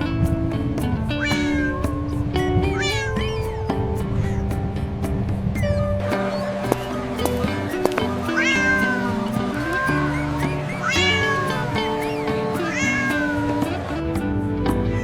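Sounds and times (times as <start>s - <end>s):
background music: 0.0s - 15.0s
cat meowing: 1.2s - 2.0s, 2.7s - 4.5s, 5.6s - 13.6s.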